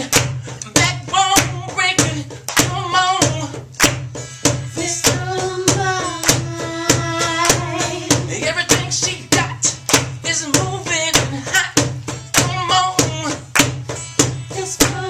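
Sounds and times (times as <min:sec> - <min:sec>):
person singing: 0:00.0 - 0:13.6, 0:14.5 - 0:15.0
sharp percussive hits: 0:00.0 - 0:15.0.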